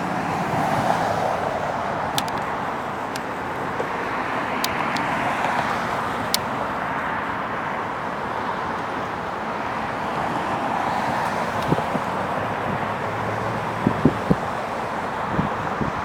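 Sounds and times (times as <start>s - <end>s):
road traffic rushing hiss: 0.0s - 16.0s
sharp clicks: 2.1s - 3.3s.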